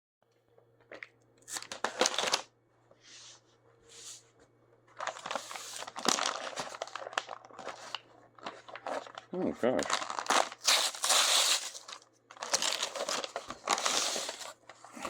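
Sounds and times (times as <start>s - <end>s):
packaging crinkling and rustling: 0.9s - 2.5s, 4.9s - 15.0s
soft brushing sounds: 3.0s - 4.5s.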